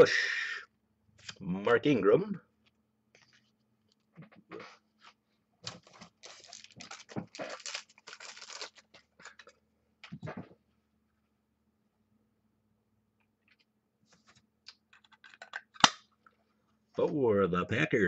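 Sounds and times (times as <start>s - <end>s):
card packaging rustling: 5.6s - 9.6s.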